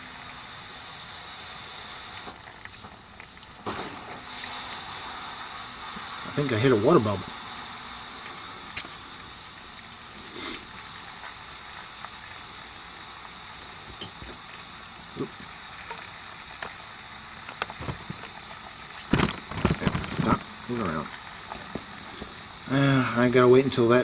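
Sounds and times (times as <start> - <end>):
water running from drain: 0.0 - 24.0
air sputtering clicks and pops: 15.1 - 22.6
knocks: 19.1 - 20.4.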